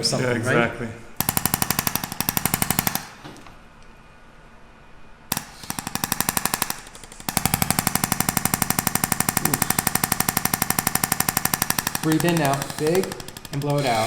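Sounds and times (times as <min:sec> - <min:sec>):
jackhammer pounding: 0:01.2 - 0:03.2, 0:05.3 - 0:14.0.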